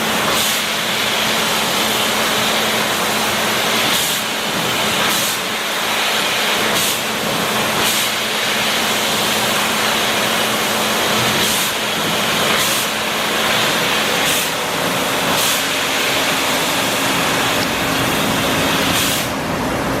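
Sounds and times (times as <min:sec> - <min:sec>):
laser cutter hissing: 0:00.0 - 0:19.5
bursts of hiss: 0:03.6 - 0:19.4.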